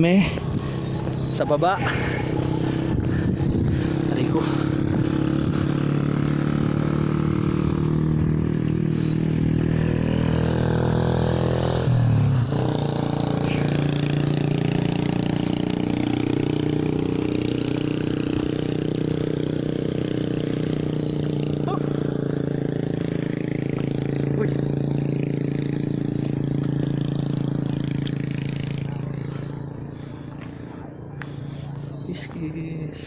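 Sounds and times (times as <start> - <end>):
motorcycle engine running: 0.0 - 33.0.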